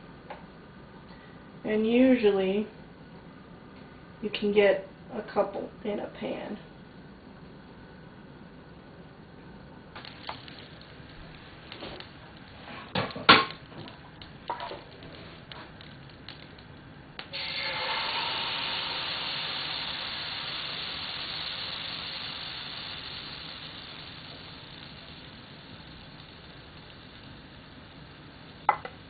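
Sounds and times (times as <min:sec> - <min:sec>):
batter sizzling in frying pan: 0:10.0 - 0:29.0.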